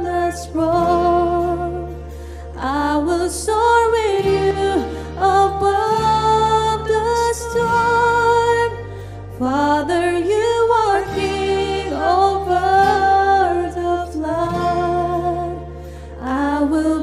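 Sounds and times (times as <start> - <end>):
sustained accompaniment chords: 8.1 - 17.0.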